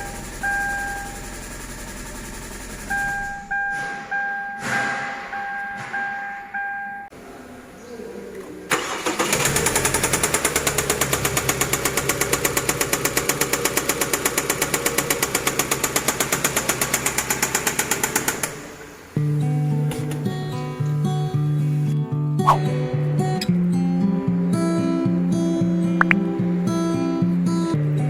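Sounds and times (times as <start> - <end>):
car warning chime beeping: 0.0 - 1.2, 2.9 - 7.1
engine idling with rapid ticking: 0.0 - 3.1, 8.8 - 18.7
car engine cranking and starting: 0.0 - 3.7, 8.7 - 17.4.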